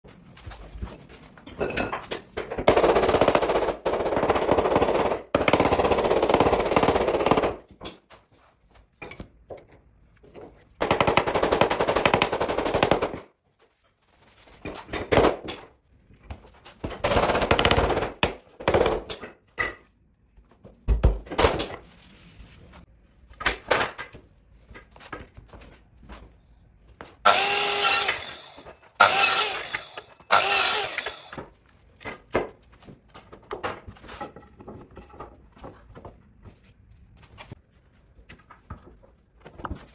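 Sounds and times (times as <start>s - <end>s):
power tools rattling on floor: 27.3s - 31.4s.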